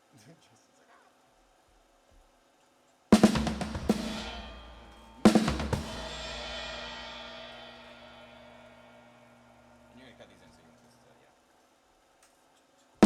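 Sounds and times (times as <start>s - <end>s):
drum kit hits: 3.2s - 9.8s
cymbal crash: 3.2s - 10.1s.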